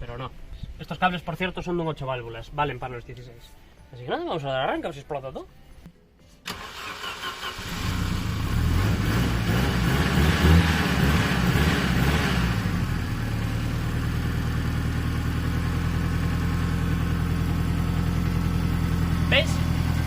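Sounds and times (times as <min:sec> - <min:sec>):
car engine starting and idling: 0:06.4 - 0:20.0.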